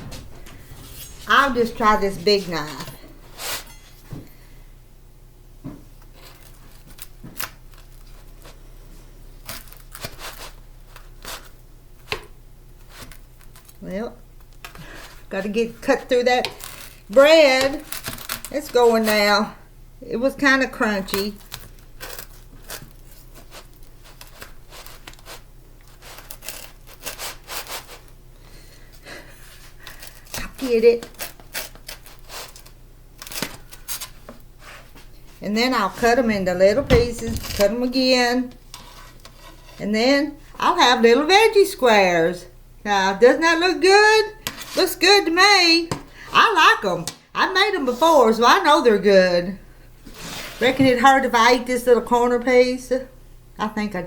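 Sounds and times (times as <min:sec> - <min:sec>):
knife crunching through crust: 0:06.1 - 0:08.7, 0:09.3 - 0:12.2, 0:12.8 - 0:13.8, 0:16.4 - 0:19.2, 0:21.2 - 0:35.0.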